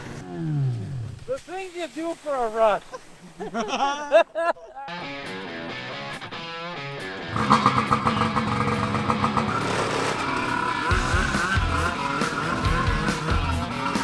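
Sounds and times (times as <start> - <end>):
rock music with electric guitar: 4.9 - 14.0
heavy bass beat: 10.9 - 14.0.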